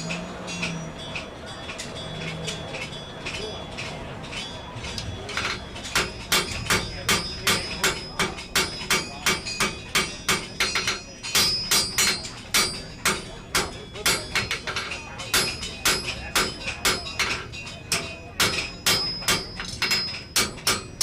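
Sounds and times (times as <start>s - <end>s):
hammer striking iron on anvil: 5.3s - 21.0s.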